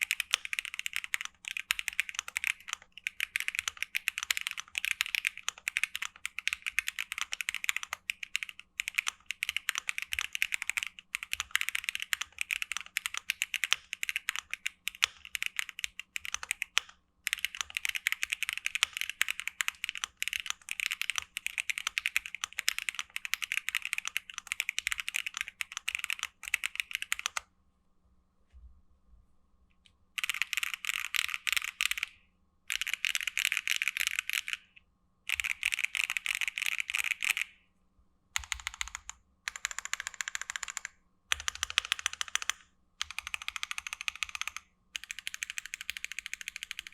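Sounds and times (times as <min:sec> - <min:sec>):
mechanical keyboard typing: 0:00.0 - 0:27.4, 0:30.2 - 0:37.6, 0:38.4 - 0:46.9.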